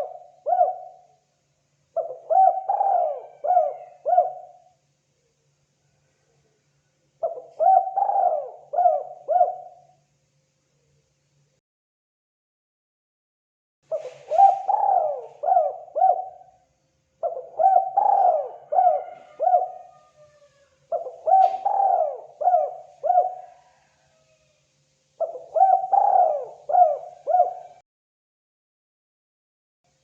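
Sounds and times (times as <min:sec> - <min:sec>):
dove cooing: 0:00.0 - 0:01.2, 0:02.0 - 0:04.7, 0:07.2 - 0:09.9, 0:13.9 - 0:16.6, 0:17.2 - 0:24.4, 0:25.2 - 0:27.8.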